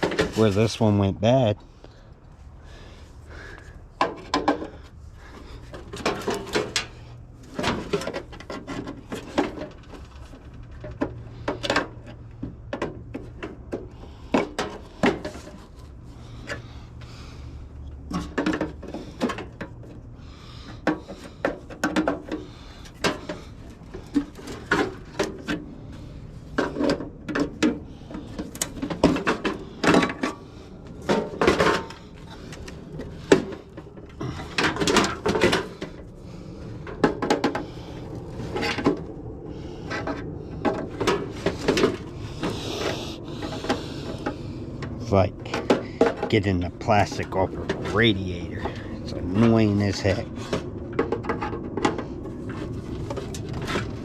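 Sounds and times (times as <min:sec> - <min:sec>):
steady low hum: 0:00.0 - 0:54.0
metal parts knocking and scraping: 0:04.0 - 0:15.8, 0:20.7 - 0:36.2.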